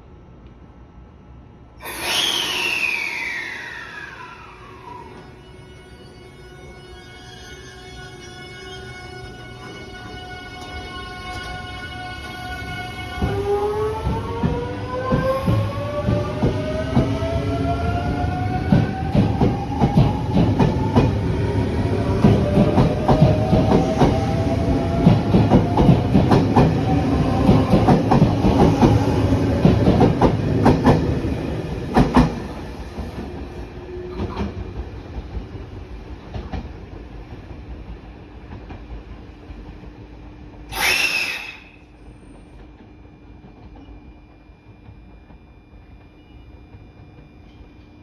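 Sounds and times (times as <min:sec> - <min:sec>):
faint train whine: 0:00.0 - 0:48.0
short loud hiss: 0:01.8 - 0:04.2, 0:40.7 - 0:41.9
train wheels clicking over rail joints: 0:22.1 - 0:31.1.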